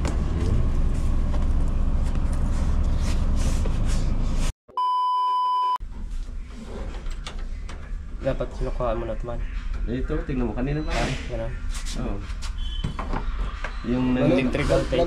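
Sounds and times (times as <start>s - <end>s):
bleep tone: 4.7s - 5.8s.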